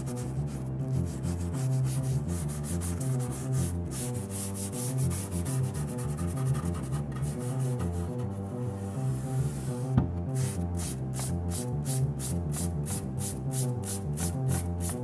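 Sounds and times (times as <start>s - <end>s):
analog bass synthesizer line: 0.0s - 14.9s
fast scratchy rhythm: 9.7s - 15.0s.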